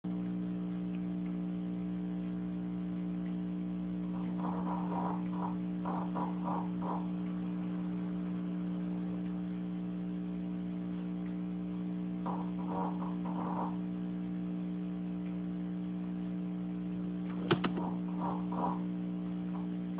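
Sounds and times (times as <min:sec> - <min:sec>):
steady electrical hum: 0:00.0 - 0:19.9
pet snoring: 0:04.1 - 0:07.2, 0:12.3 - 0:13.8, 0:17.8 - 0:18.9.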